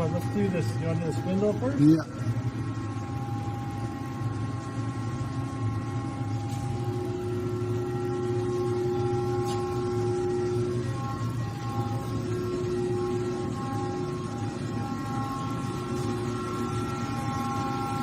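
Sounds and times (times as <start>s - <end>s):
lathe spindle electric hum: 0.0s - 18.0s
mid-pitched tone: 0.0s - 18.0s
whining tones: 0.0s - 18.0s.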